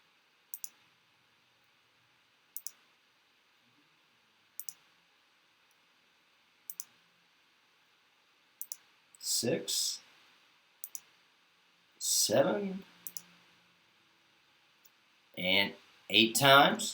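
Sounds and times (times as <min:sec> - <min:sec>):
computer mouse clicks: 0:00.5 - 0:00.8, 0:02.6 - 0:02.9, 0:04.6 - 0:04.9, 0:06.7 - 0:07.0, 0:08.6 - 0:08.9, 0:10.8 - 0:11.1, 0:13.0 - 0:13.3.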